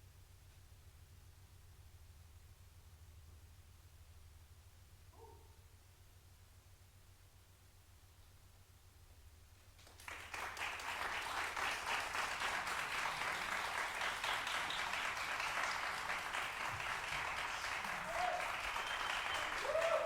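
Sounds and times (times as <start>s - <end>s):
audience applauding: 9.8s - 20.0s.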